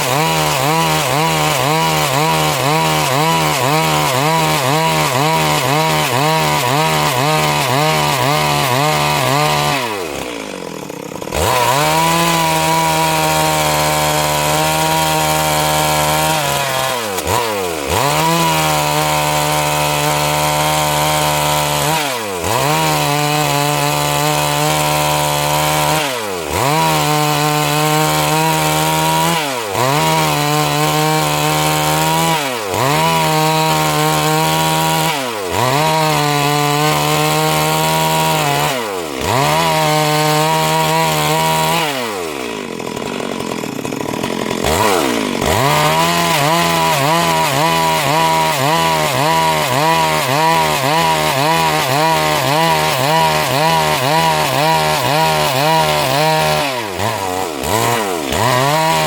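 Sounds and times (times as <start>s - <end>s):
chainsaw sawing wood: 0.0s - 59.0s.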